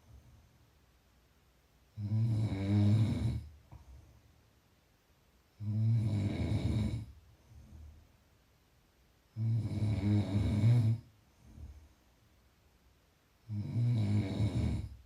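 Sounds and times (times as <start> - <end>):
person snoring: 2.0 - 3.5, 5.6 - 7.1, 9.4 - 11.1, 13.4 - 15.0.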